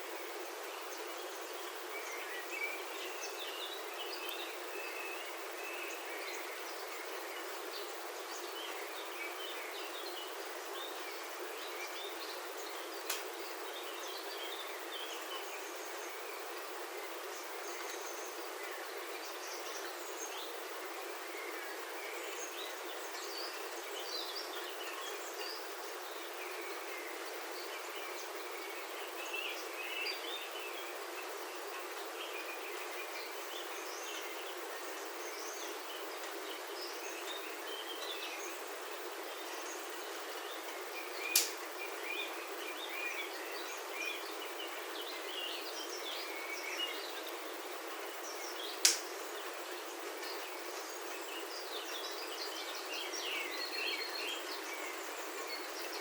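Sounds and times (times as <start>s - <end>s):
sharp tick: 13.1s - 13.3s, 41.3s - 41.6s, 48.8s - 49.1s.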